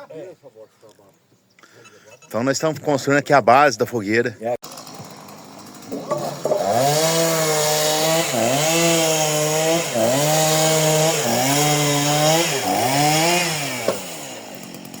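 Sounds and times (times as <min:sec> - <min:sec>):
chainsaw running at high revs: 0:04.6 - 0:15.0.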